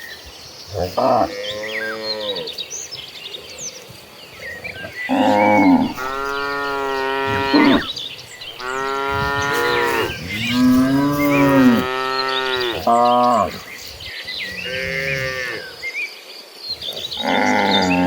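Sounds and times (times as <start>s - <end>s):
cattle mooing: 5.1s - 13.6s, 14.5s - 15.7s.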